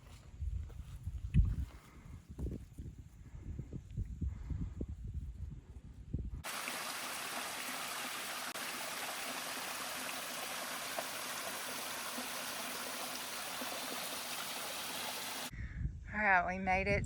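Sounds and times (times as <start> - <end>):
stream water rushing: 6.4 - 15.5.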